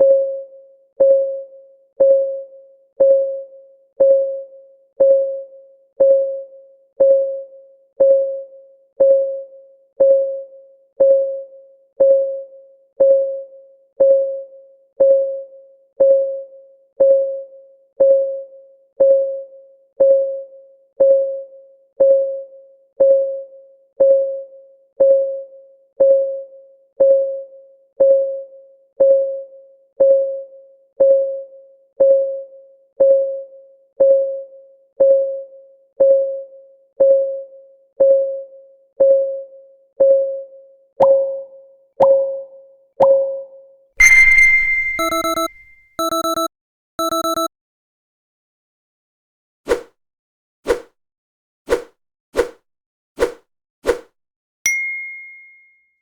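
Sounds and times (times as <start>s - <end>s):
timer ticking: 44.0s - 47.5s.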